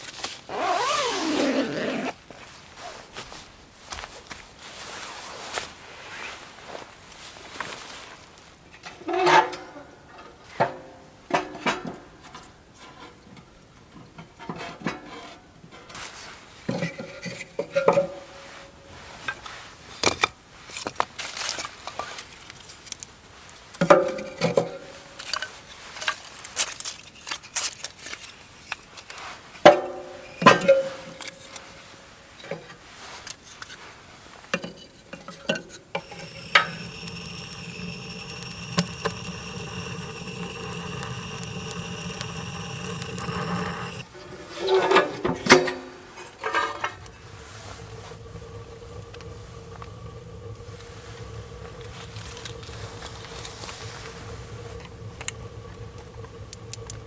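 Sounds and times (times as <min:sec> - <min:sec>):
steady even drone: 0:36.0 - 0:44.1, 0:47.0 - 0:57.0.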